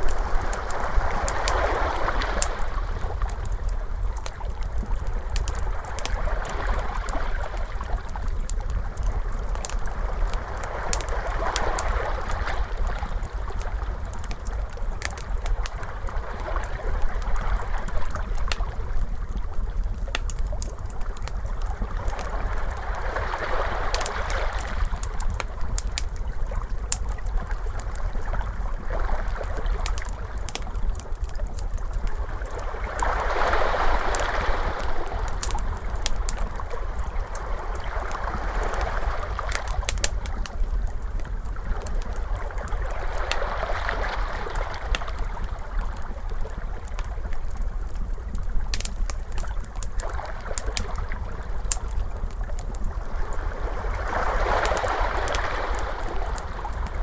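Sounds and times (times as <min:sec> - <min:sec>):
ocean waves washing in: 0:00.0 - 0:03.2, 0:32.6 - 0:36.0, 0:53.0 - 0:57.0
steady low rumble: 0:00.0 - 0:33.3, 0:33.9 - 0:57.0
fire crackling and popping: 0:00.0 - 0:57.0.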